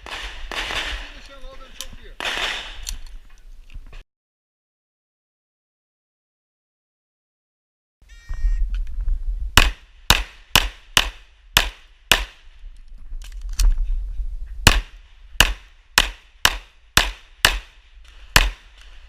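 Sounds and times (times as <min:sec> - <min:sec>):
pistol shots: 0:00.0 - 0:01.2, 0:02.2 - 0:03.0, 0:09.6 - 0:12.4, 0:14.7 - 0:18.8.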